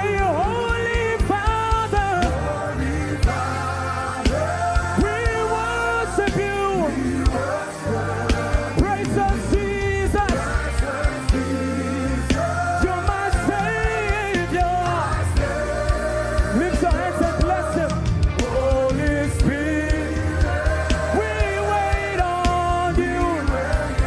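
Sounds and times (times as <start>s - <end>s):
band with drums and bass: 0.0s - 24.0s.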